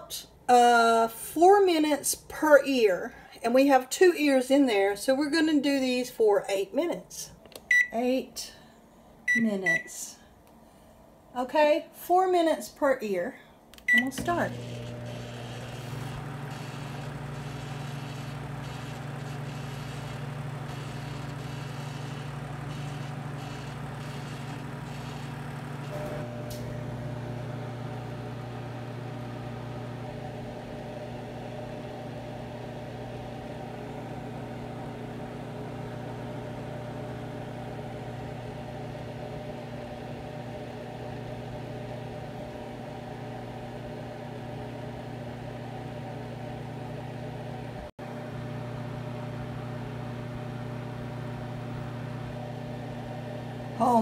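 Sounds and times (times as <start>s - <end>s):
microwave oven humming: 13.8s - 54.0s.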